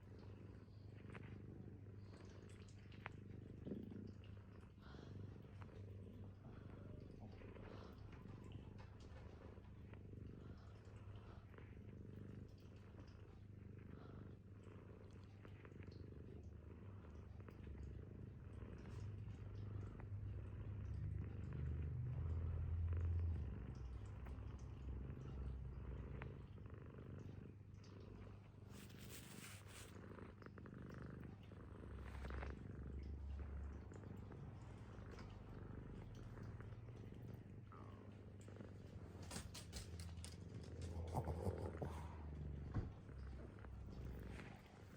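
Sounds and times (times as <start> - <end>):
cat purring: 0.0 - 44.9.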